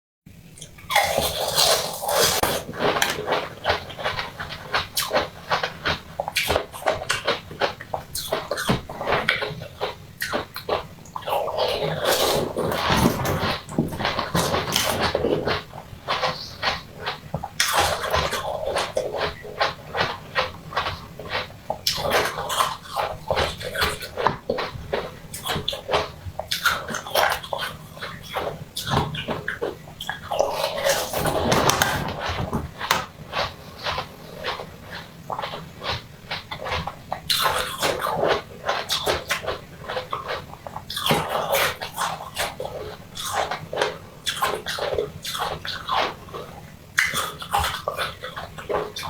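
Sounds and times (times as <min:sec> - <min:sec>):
person chewing and eating: 0:00.4 - 0:49.0.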